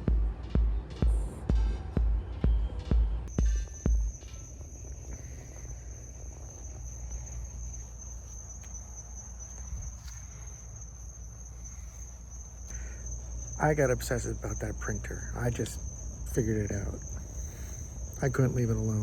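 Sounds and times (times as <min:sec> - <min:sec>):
insect trilling: 0:03.3 - 0:19.0.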